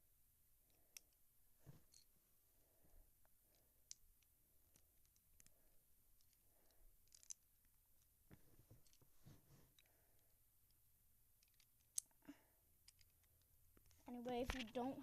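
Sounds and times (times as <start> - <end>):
plastic pieces clicking: 7.0 - 7.4, 11.4 - 12.2, 12.8 - 14.8.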